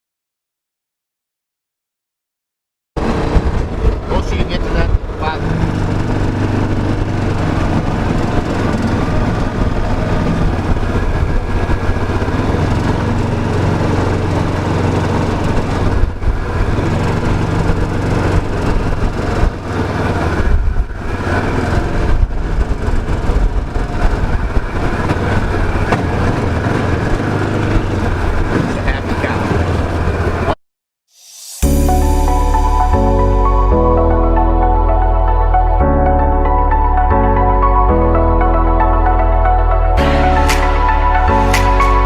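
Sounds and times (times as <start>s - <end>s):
gas engine water pump running: 3.0s - 30.6s.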